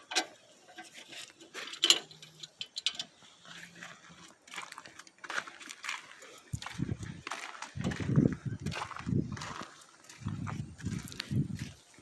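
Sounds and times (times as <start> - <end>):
hand tools clinking: 0.0 - 3.2.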